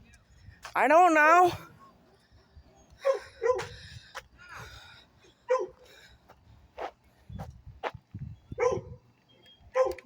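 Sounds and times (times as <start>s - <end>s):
dog barking: 3.0s - 3.7s, 5.5s - 5.8s, 8.6s - 9.0s, 9.8s - 10.0s.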